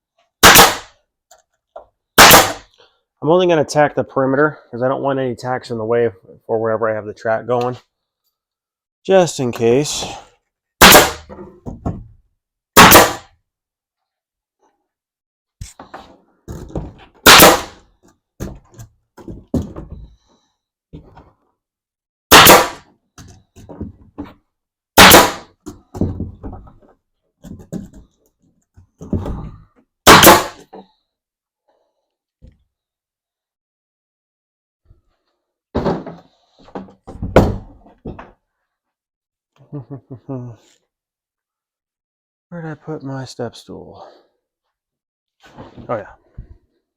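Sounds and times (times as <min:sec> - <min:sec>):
nail gun firing: 0:00.4 - 0:00.9, 0:02.2 - 0:02.6, 0:10.8 - 0:11.3, 0:12.8 - 0:13.3, 0:17.2 - 0:17.8, 0:22.3 - 0:22.8, 0:25.0 - 0:25.5, 0:30.1 - 0:30.6
handling knocks and clatter: 0:25.6 - 0:29.8.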